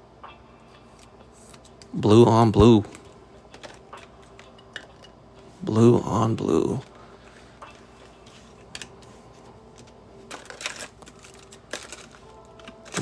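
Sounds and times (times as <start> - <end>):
faint room noise: 0.0 - 13.0
trading cards clicking and rustling: 0.9 - 2.0, 2.6 - 5.2, 6.8 - 13.0.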